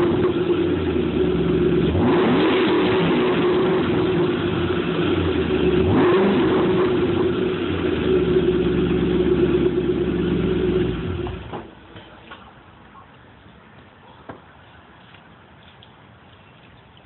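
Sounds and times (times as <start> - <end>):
car engine running: 0.0 - 11.6.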